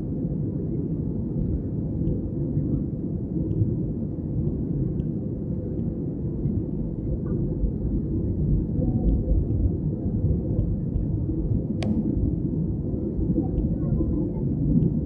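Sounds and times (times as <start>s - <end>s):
airliner cabin rumble: 6.6s - 15.0s.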